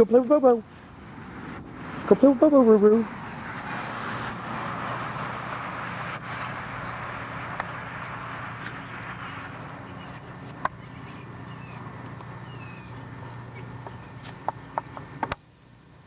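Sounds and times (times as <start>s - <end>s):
steady rush: 0.0s - 15.2s
faint high chirps: 4.8s - 15.2s.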